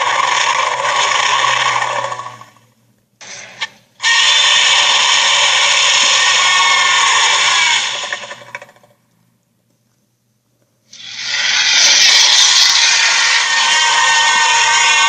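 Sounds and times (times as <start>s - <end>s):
harsh grating creature sound: 0.0s - 2.5s, 4.0s - 8.6s, 11.0s - 15.0s.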